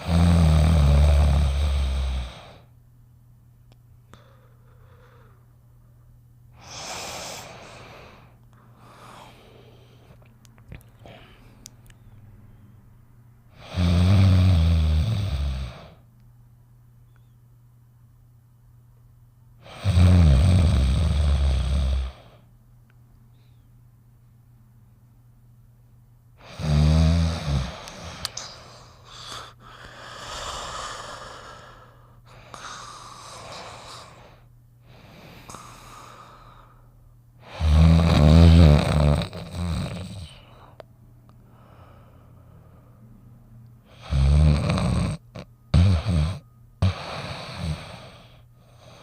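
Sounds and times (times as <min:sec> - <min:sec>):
person snoring: 0:00.0 - 0:02.7, 0:06.6 - 0:10.2, 0:13.5 - 0:16.0, 0:19.6 - 0:22.4, 0:26.4 - 0:36.8, 0:37.4 - 0:40.8, 0:43.9 - 0:49.0
soft breathing: 0:04.0 - 0:06.0, 0:06.6 - 0:12.9, 0:23.3 - 0:23.8, 0:27.6 - 0:37.6, 0:40.2 - 0:44.0.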